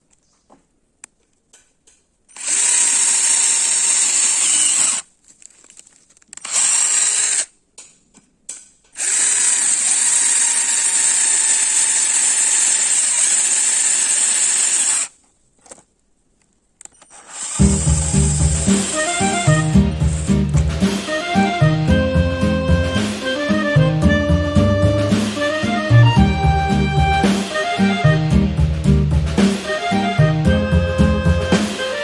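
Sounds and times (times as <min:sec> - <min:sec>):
cordless drill motor running: 0:02.3 - 0:05.1, 0:06.4 - 0:07.5, 0:09.0 - 0:15.2, 0:17.1 - 0:20.4
small clicks: 0:04.8 - 0:09.1, 0:15.2 - 0:17.6.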